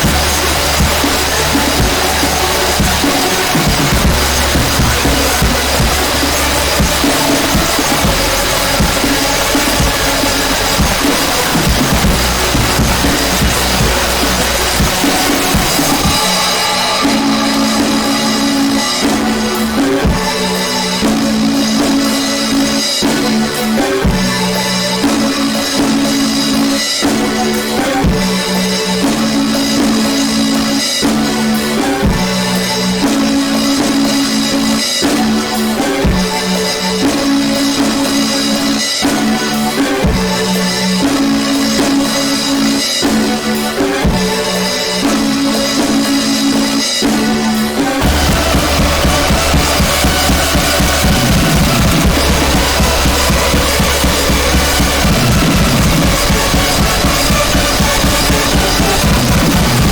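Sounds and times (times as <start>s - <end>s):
held deep bass note: 0.0s - 22.3s, 48.0s - 59.9s
repeating guitar riff: 0.0s - 22.8s, 48.0s - 59.9s
drum kit playing: 0.0s - 59.9s.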